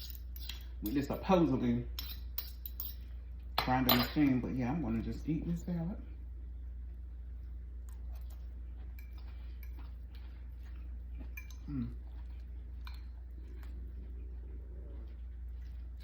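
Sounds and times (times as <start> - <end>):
fork clinking against bowl: 0.0 - 1.1, 2.0 - 4.4, 9.0 - 10.0, 11.2 - 11.7
chewing: 6.9 - 16.0.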